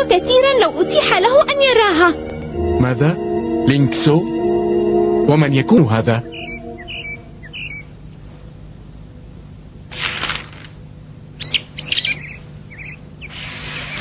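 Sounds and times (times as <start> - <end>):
cartoon bird chirping: 6.2 - 8.4, 11.4 - 14.0.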